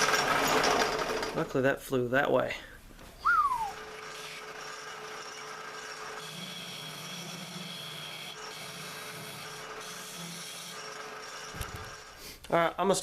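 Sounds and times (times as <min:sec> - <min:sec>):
tool scraping spinning wood: 0:00.0 - 0:01.6, 0:03.3 - 0:12.4
lathe motor whine: 0:03.3 - 0:12.2.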